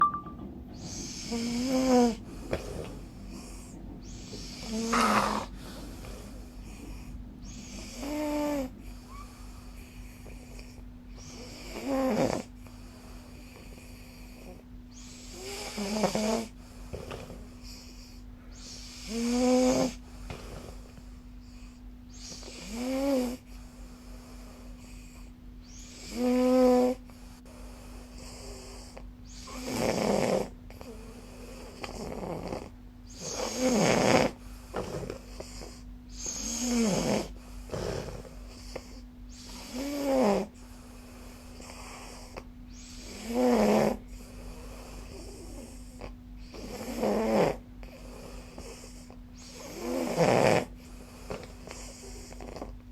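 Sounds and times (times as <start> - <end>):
steady low hum: 0.0 - 52.9
person snoring: 31.7 - 40.5, 41.6 - 50.7.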